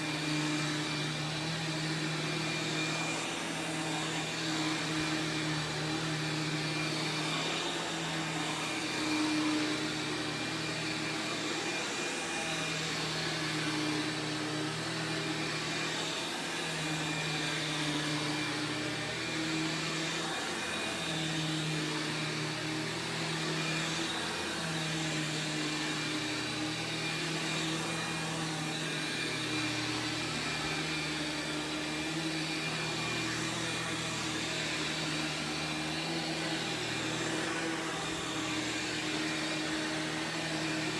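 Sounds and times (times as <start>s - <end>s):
vacuum cleaner motor whining: 0.0s - 40.9s.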